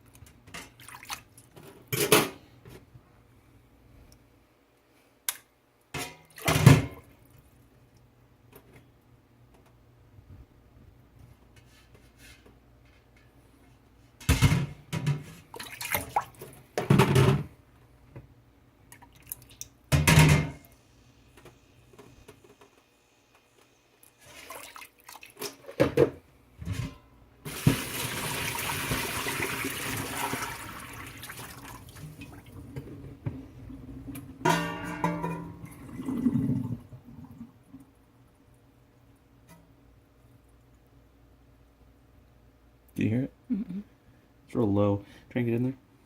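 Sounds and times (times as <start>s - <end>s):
dishes clattering in sink: 5.9s - 7.0s, 14.2s - 16.2s, 16.8s - 17.5s, 19.9s - 20.7s, 34.4s - 35.9s.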